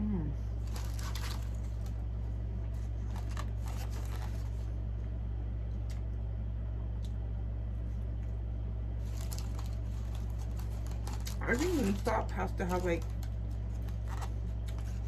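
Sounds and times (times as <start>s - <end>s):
steady low hum: 0.0s - 15.0s
clicks and rustles of eating: 0.6s - 4.7s, 5.7s - 6.2s, 9.0s - 15.0s.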